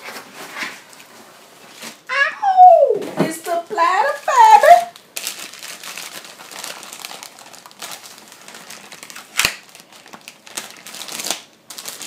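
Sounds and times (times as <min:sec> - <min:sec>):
paper packaging rustling: 0:03.0 - 0:12.0.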